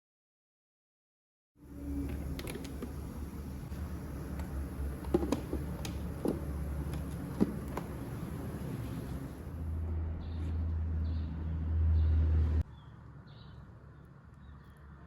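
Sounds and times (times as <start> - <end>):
steady low hum: 1.6 - 10.3.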